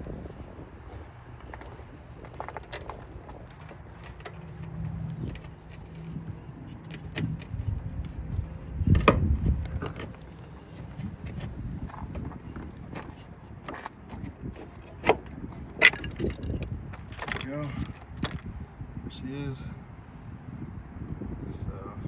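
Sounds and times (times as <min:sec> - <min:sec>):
metal clinks and knocks: 0:02.2 - 0:18.4.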